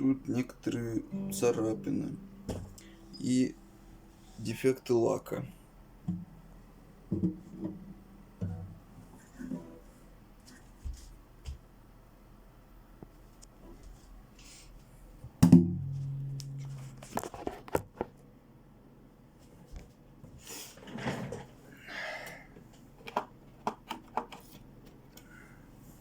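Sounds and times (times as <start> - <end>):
guitar strings ringing: 0.7 - 9.8, 15.5 - 17.3
thump on acoustic guitar body: 15.4 - 16.7.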